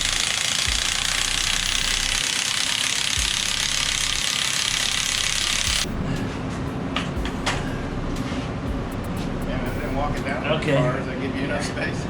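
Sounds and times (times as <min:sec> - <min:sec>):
pneumatic tool hissing: 0:00.0 - 0:05.9.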